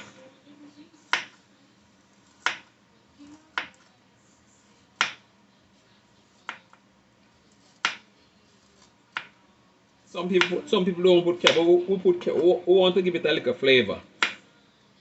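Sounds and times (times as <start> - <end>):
knife cutting carrot on board: 1.0 - 1.4, 2.2 - 2.8, 5.0 - 5.3, 6.3 - 6.8, 7.5 - 9.4, 10.4 - 10.6.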